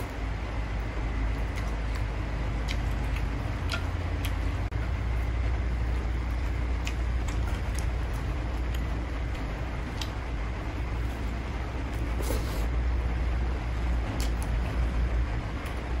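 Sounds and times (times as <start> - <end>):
steady low hum: 0.0 - 16.0
person eating noodles: 10.8 - 12.8.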